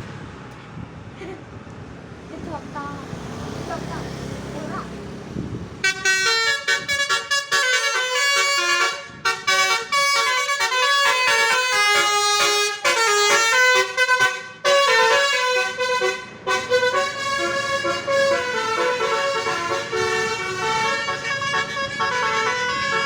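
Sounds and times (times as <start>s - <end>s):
multi-tone bus horn melody: 5.8s - 23.0s.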